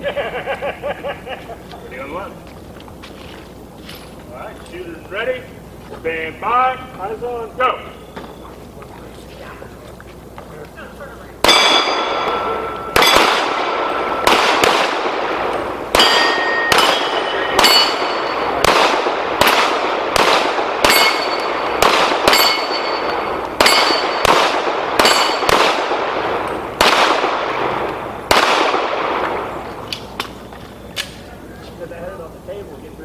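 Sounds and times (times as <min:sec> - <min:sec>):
steel plate ringing: 0:11.4 - 0:18.8, 0:20.8 - 0:25.6
pistol shots: 0:11.4 - 0:31.2.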